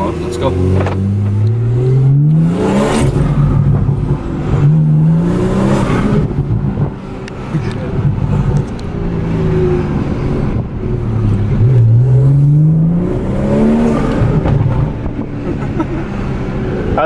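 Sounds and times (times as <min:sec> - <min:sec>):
car engine accelerating hard: 0:00.0 - 0:17.0.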